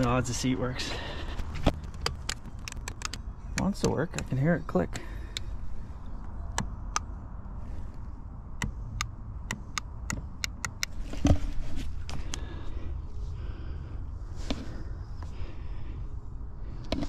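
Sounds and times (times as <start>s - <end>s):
power seat clicking: 1.6s - 4.3s.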